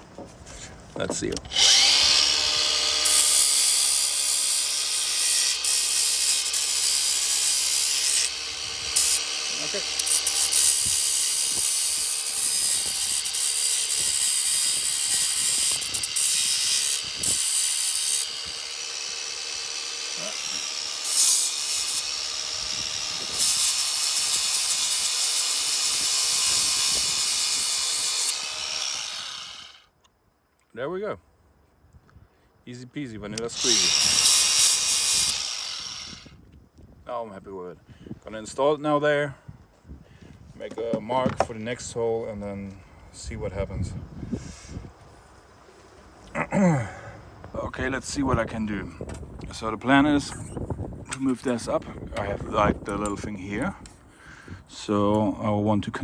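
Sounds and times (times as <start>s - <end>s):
power tool grinding metal: 1.4s - 29.8s, 33.4s - 36.3s.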